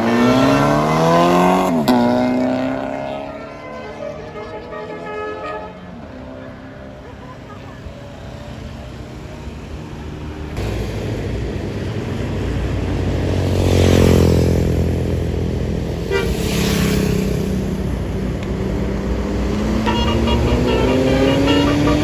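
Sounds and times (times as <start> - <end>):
bus diesel engine passing: 0.0 - 22.0
heavy vehicle engine revving: 9.8 - 22.0.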